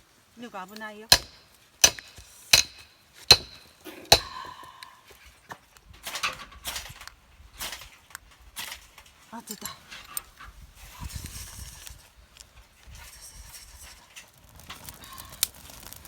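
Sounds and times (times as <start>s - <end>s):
sharp strikes on wood: 1.1s - 4.5s.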